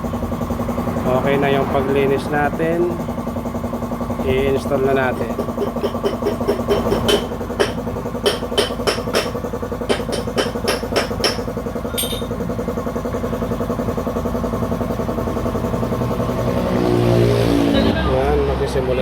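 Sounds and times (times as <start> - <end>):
steady mechanical hum: 0.0 - 19.0
sharp knocks: 5.1 - 12.4.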